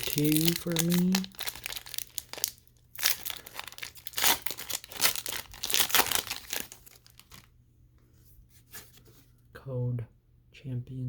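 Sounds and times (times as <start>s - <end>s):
foil pack crinkling: 0.0s - 7.5s.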